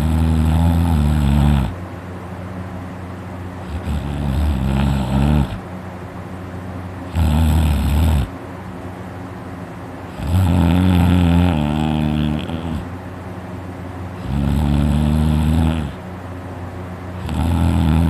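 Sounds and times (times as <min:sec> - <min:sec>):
person snoring loudly: 0:00.0 - 0:01.8, 0:03.7 - 0:05.6, 0:07.1 - 0:08.3, 0:10.2 - 0:12.9, 0:14.2 - 0:16.0, 0:17.2 - 0:18.0.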